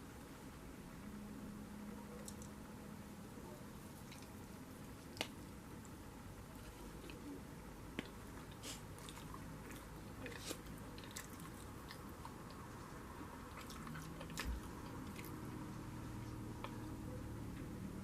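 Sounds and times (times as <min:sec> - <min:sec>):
person chewing soft food: 0:04.0 - 0:17.0.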